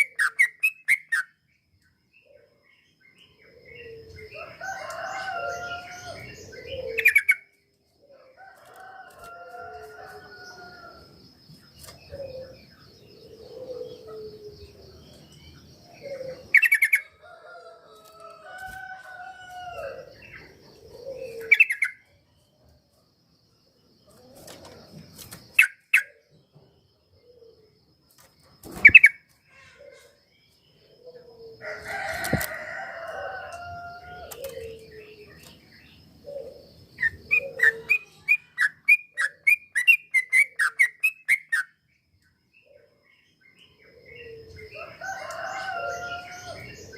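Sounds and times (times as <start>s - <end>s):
bulbul song warbled phrases: 36.4s - 41.4s.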